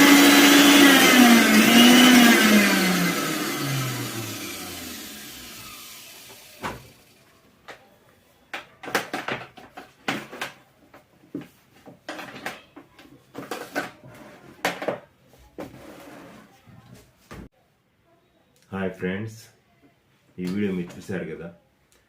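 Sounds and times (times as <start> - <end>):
mixer grinder motor coasting down: 0.0 - 7.1.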